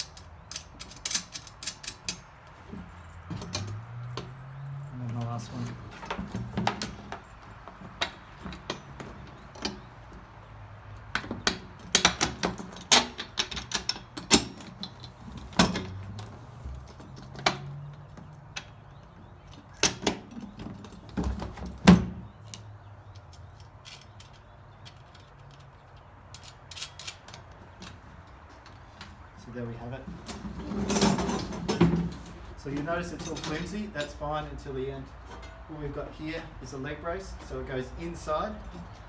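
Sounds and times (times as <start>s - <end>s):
metal parts clinking and knocking: 0.0s - 9.9s, 11.1s - 16.1s, 22.5s - 28.4s, 33.0s - 34.2s, 35.2s - 35.7s.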